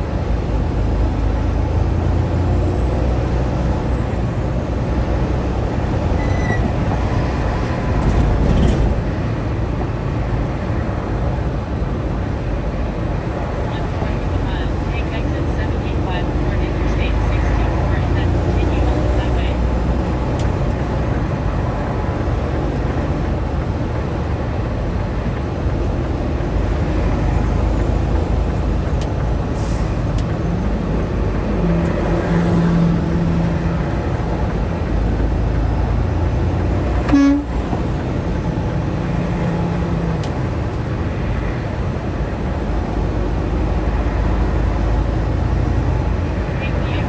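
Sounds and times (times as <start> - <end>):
truck engine rumble: 0.0 - 47.0.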